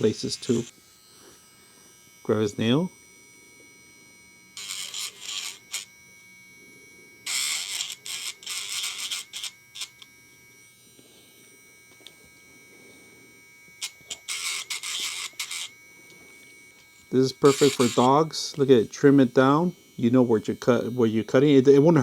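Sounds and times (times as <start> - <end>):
high scratchy grinding: 0.0 - 2.7, 4.6 - 5.9, 7.3 - 10.0, 13.8 - 15.7, 16.4 - 22.0
nail grinder motor whine: 0.0 - 22.0.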